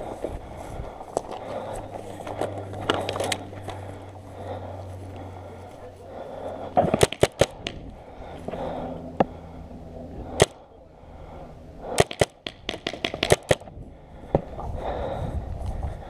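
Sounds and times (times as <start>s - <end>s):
paintball markers firing: 2.8s - 3.8s, 6.8s - 7.8s, 10.4s - 10.6s, 11.9s - 13.7s.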